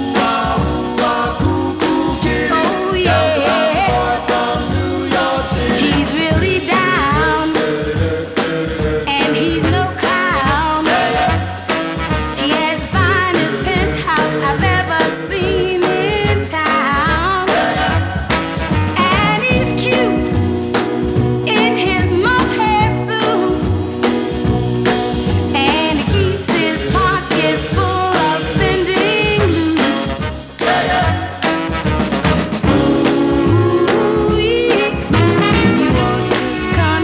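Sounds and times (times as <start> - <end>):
rock and roll music: 0.0 - 37.0.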